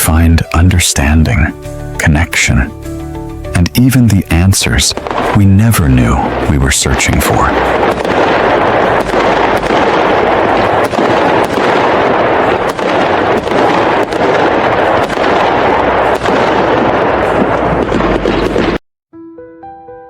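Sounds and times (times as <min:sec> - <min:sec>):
loud dense rush of noise: 0:04.1 - 0:18.8
sharp cracks or bangs: 0:04.6 - 0:18.8.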